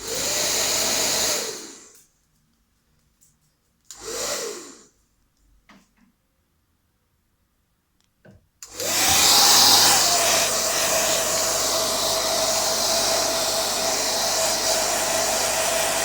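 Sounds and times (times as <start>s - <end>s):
hair dryer motor whirring: 0.0s - 2.0s, 3.9s - 4.9s, 8.6s - 16.0s.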